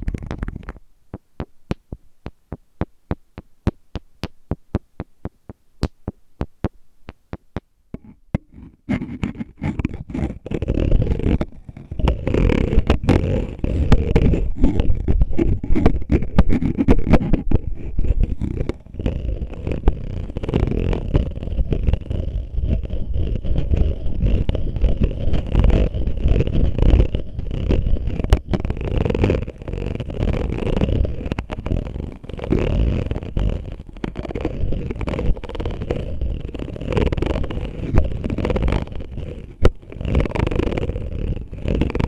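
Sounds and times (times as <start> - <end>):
fingers tapping bottle: 0.0 - 28.5
scratching and rubbing on bottle: 0.0 - 42.0.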